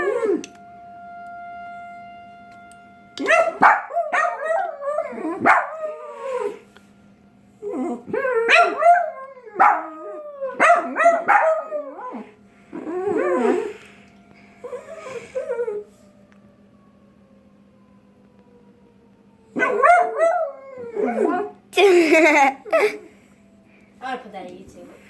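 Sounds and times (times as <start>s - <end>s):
dog howling and yipping: 3.2s - 6.6s, 7.6s - 13.7s, 19.6s - 21.6s.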